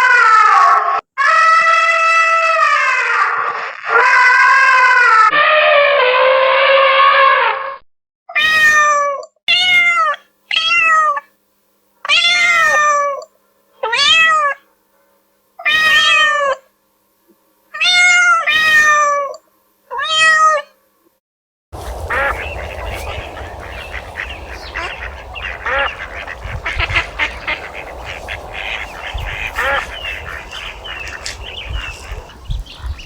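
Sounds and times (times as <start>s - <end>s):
long steady pitched call: 21.8s - 33.0s.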